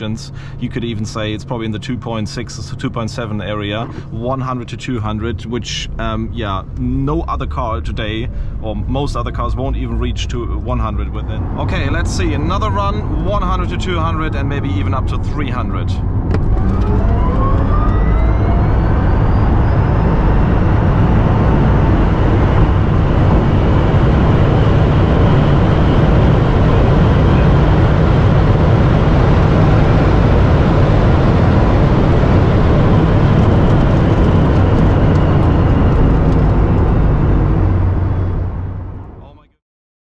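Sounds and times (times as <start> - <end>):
wind and tyre noise: 0.7 - 39.3
electric motors whining: 16.3 - 30.2.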